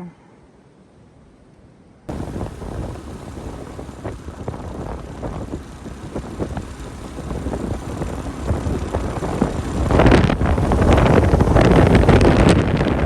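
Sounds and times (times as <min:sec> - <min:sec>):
wind buffeting microphone: 0:02.1 - 0:13.0.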